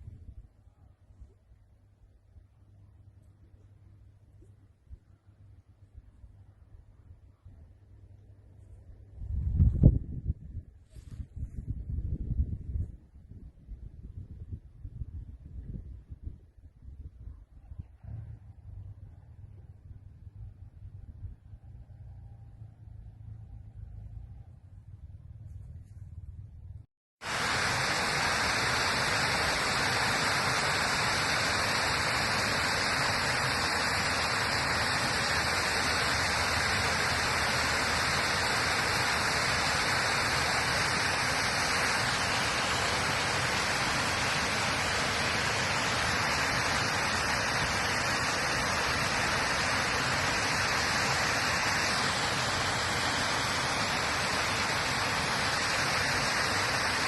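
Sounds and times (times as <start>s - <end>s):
water rushing: 27.2s - 57.0s.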